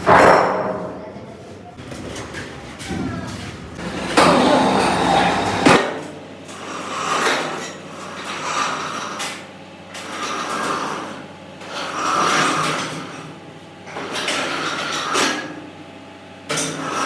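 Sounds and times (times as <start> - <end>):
scraping strokes: 3.8 - 5.8.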